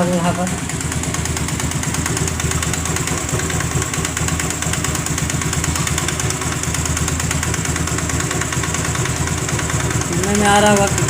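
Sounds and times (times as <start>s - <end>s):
rapid metallic ticking from engine: 0.0s - 11.0s
scooter engine idling: 0.0s - 11.0s.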